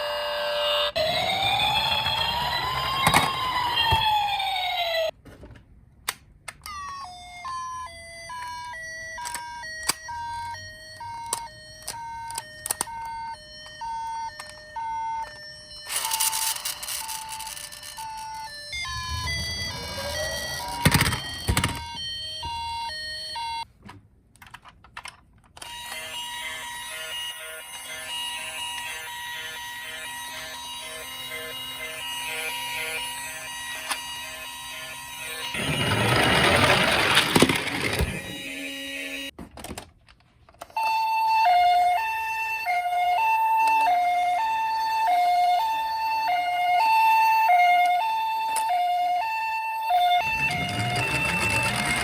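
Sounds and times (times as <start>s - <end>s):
second toy electronic siren: 0.0s - 5.2s, 6.6s - 23.7s, 25.6s - 39.3s, 40.6s - 52.0s
toy two-tone siren: 0.0s - 5.2s, 6.5s - 23.7s, 25.6s - 39.4s, 40.6s - 52.0s
loud rattling with clacks: 35.6s - 38.4s, 50.2s - 52.0s.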